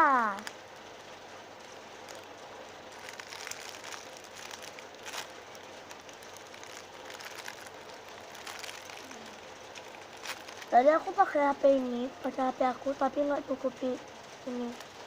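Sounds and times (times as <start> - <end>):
packaging crinkling and rustling: 1.9 - 10.8.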